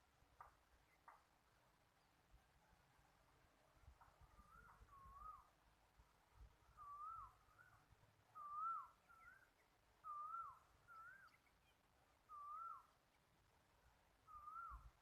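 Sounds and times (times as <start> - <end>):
bird whistled call: 4.4 - 5.5, 6.8 - 11.6, 12.3 - 13.0, 14.3 - 15.0.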